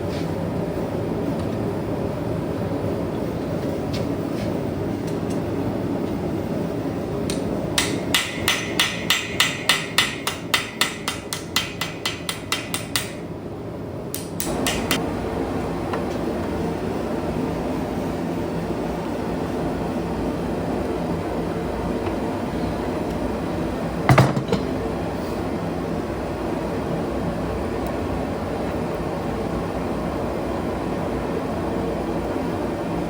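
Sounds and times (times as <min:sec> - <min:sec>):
hammer ringing on anvil: 0:07.8 - 0:13.2.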